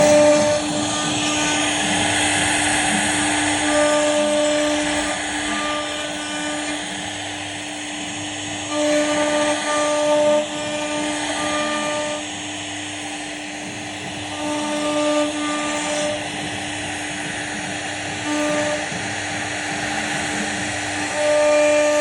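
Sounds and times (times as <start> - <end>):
router spindle whine: 0.0 - 22.0.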